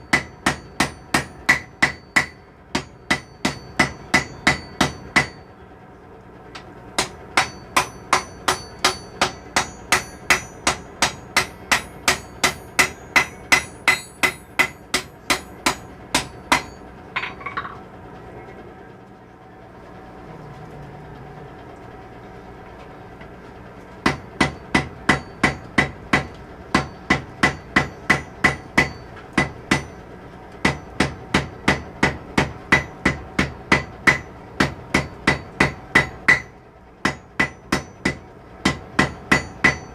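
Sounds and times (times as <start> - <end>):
hammer ringing on anvil: 0.0 - 5.5, 7.0 - 17.7, 24.1 - 30.0, 37.1 - 39.9.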